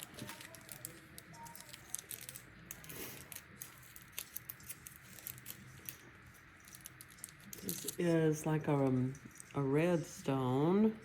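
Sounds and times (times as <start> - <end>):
plastic bag rustling and crinkling: 0.0 - 8.2.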